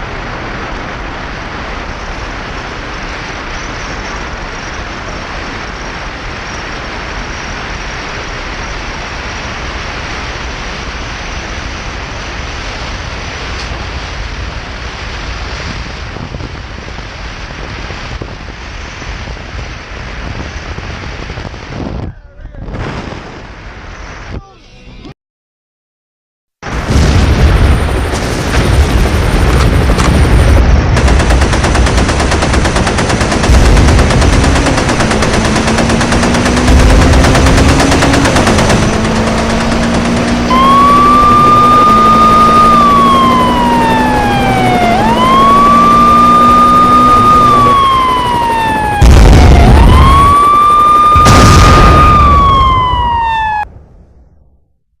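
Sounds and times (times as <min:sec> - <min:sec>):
loud rough rumbling noise: 0:00.0 - 0:24.2, 0:26.6 - 0:54.5
emergency siren wailing: 0:32.6 - 0:53.7.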